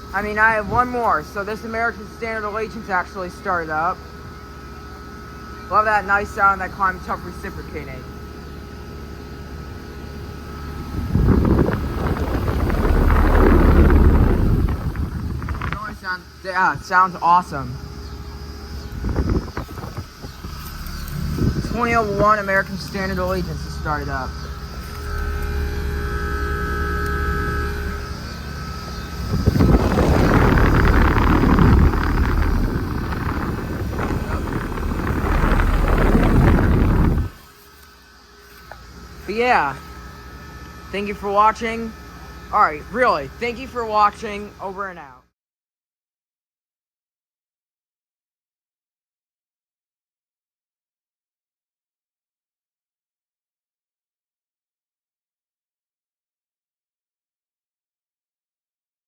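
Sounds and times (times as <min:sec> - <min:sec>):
air conditioner compressor humming: 0:00.0 - 0:45.0
wind buffeting microphone: 0:10.7 - 0:16.1, 0:18.8 - 0:20.6, 0:21.2 - 0:22.4, 0:29.0 - 0:37.4
rush of air: 0:10.8 - 0:15.8, 0:29.2 - 0:37.4.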